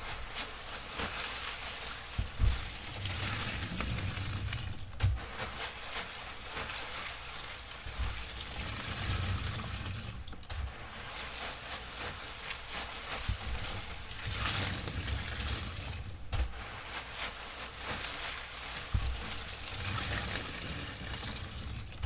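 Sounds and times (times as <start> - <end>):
running water: 0.0 - 22.0
sponge squelching: 0.0 - 22.0
dull thumps: 2.1 - 5.7, 13.2 - 16.8.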